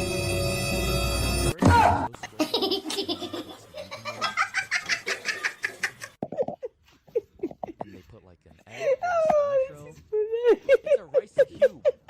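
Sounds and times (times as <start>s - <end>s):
background music: 0.0s - 2.7s
laughter: 2.2s - 7.8s, 10.2s - 12.0s.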